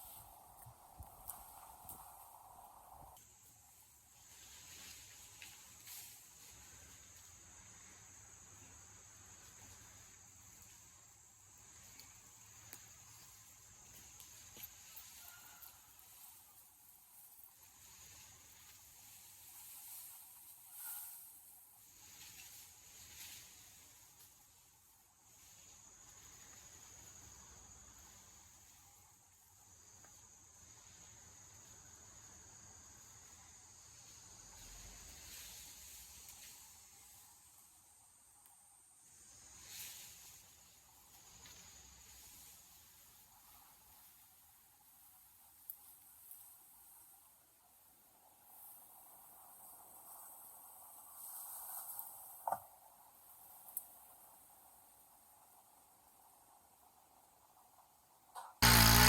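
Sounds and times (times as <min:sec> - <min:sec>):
insects chirring: 0:00.0 - 0:47.8.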